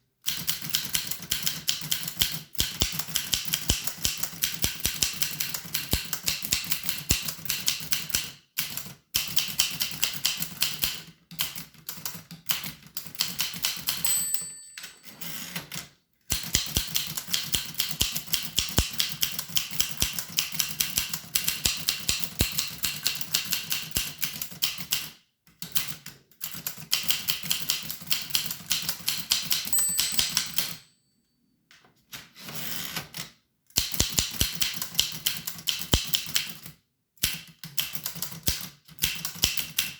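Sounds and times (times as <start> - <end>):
typewriter keystrokes clacking: 0.3 - 15.0, 16.3 - 25.1, 25.8 - 30.8, 33.8 - 39.9
typewriter bell ring: 13.9 - 15.6, 29.6 - 31.3.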